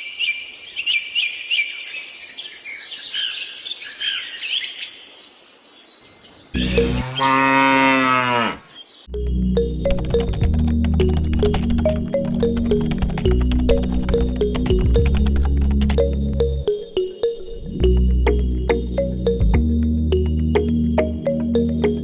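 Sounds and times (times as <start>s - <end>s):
small birds chirping: 0.0s - 9.1s
cow mooing: 6.6s - 8.8s.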